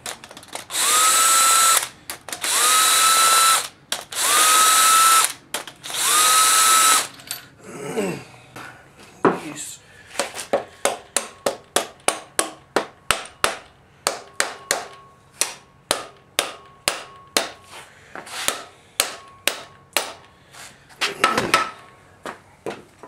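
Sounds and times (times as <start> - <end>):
hammer on metal: 10.8 - 17.6, 18.5 - 20.2.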